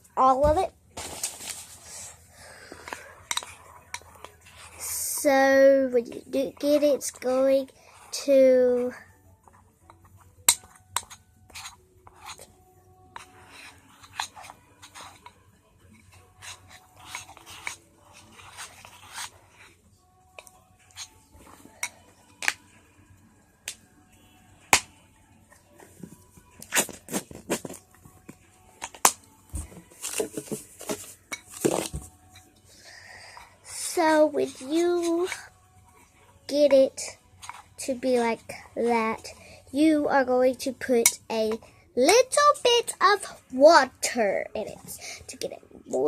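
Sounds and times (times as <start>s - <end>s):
spoon scraping a bowl: 2.6s - 5.2s, 8.8s - 12.5s, 13.2s - 15.4s, 16.0s - 22.6s.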